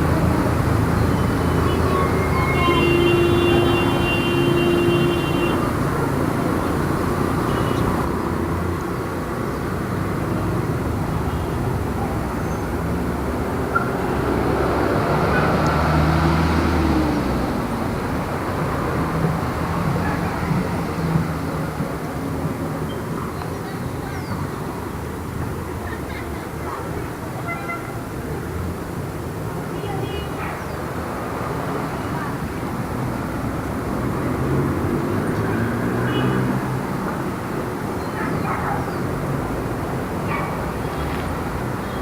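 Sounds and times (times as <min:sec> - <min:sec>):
street traffic passing: 0:00.0 - 0:42.0
high squeal: 0:01.0 - 0:03.7.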